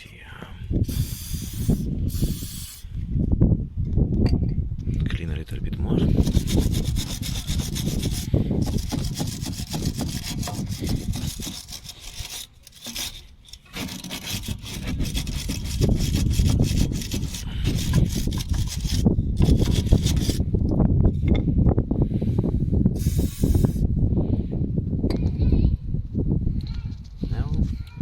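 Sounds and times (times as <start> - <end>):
wire brush scrubbing metal: 0.9 - 2.8, 6.1 - 20.4.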